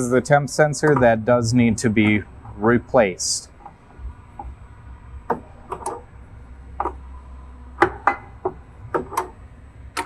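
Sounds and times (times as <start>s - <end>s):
quiet hum: 0.0s - 10.0s
hand tools clicking and knocking: 0.8s - 1.3s, 7.8s - 9.4s.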